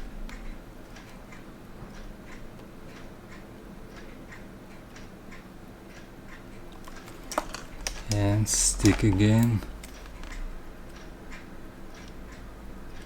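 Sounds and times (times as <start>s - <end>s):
clock ticking: 0.0s - 13.0s
low steady hum: 6.7s - 13.0s.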